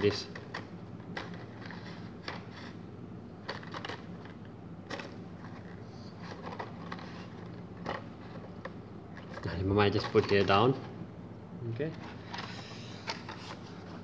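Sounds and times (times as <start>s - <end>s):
packaging clicks and rustles: 3.4s - 10.5s.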